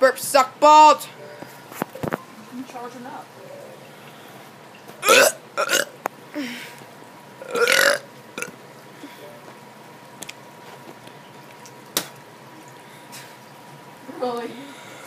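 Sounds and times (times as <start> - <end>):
child burping: 5.0 - 6.6, 7.4 - 8.5.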